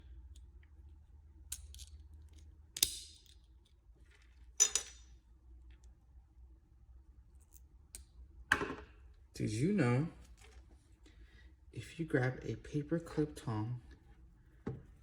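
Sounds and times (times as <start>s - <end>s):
pliers snapping metallically: 1.5s - 3.4s.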